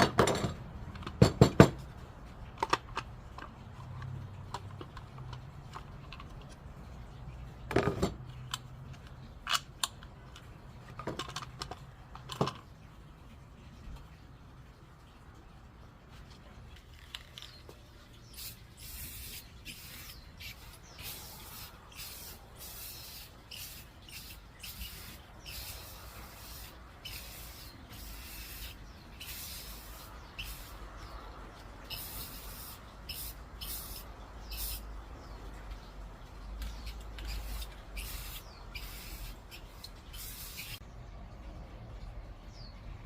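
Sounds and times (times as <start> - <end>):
aerosol spray can hissing: 18.3 - 31.1, 31.9 - 34.8, 36.8 - 40.8.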